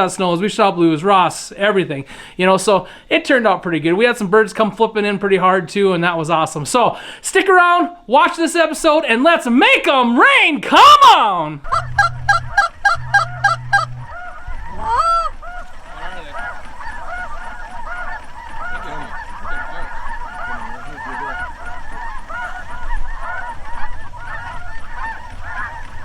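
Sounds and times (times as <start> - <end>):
geese honking: 8.9 - 26.0.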